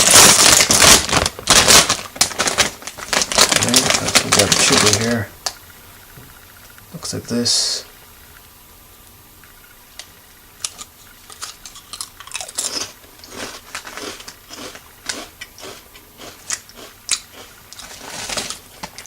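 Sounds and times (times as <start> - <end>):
potato chip crunching: 0.0 - 5.3, 10.6 - 19.0.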